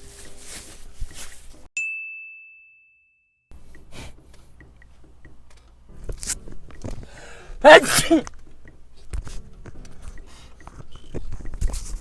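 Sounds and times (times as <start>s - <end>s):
bright ding: 1.8s - 3.4s.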